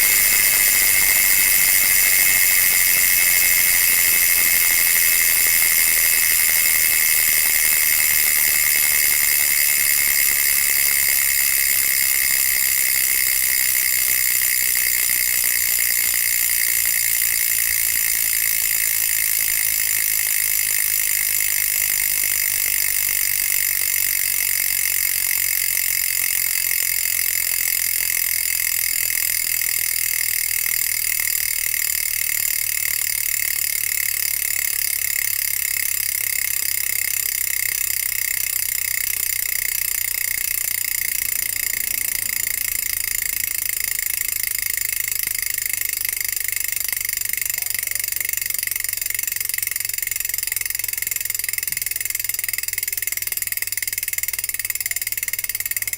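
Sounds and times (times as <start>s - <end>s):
bicycle hub freewheeling buzz: 0.0s - 55.9s.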